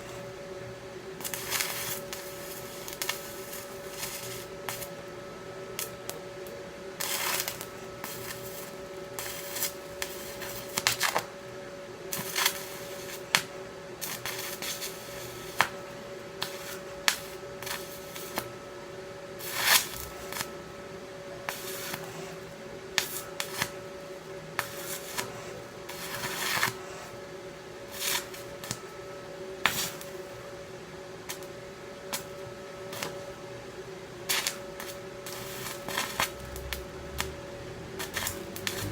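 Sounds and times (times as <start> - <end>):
steady hum: 0.0 - 38.9
welding arc crackling and popping: 1.2 - 5.1, 5.8 - 11.4, 12.1 - 18.6, 19.4 - 20.5, 21.5 - 22.4, 23.0 - 24.0, 24.6 - 26.8, 27.9 - 28.9, 29.6 - 30.4, 31.2 - 31.5, 32.1 - 33.4, 34.2 - 38.9.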